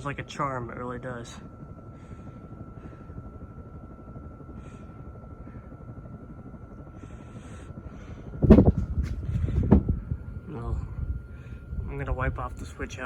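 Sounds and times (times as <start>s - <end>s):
ceiling fan whooshing: 7.0s - 13.0s
loud bumps: 8.4s - 10.0s.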